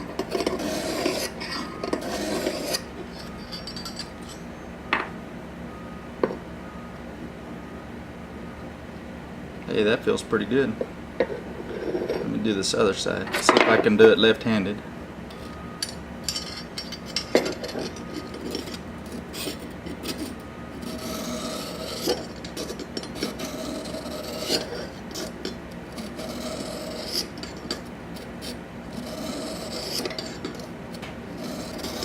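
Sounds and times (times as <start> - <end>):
knife scraping on sharpening hone: 0.2 - 4.5, 18.6 - 30.7, 31.4 - 32.0.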